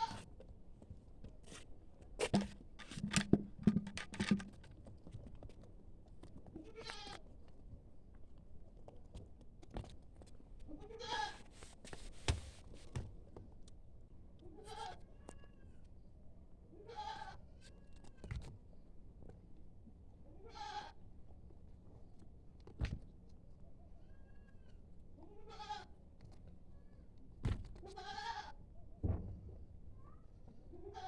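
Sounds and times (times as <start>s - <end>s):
goats bleating: 11.0s - 11.4s, 25.4s - 25.9s
loud knocks and clatter: 29.0s - 29.7s.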